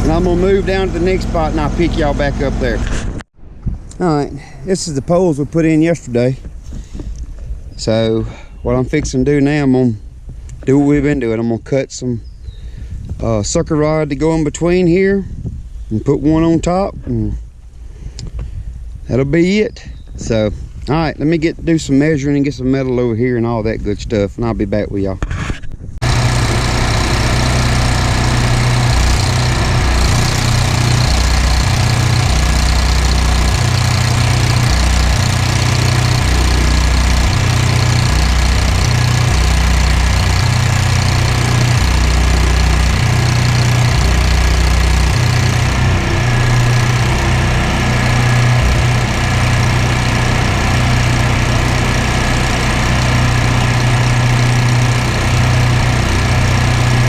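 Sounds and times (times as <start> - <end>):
engine idling: 0.0 - 3.2, 26.0 - 57.0.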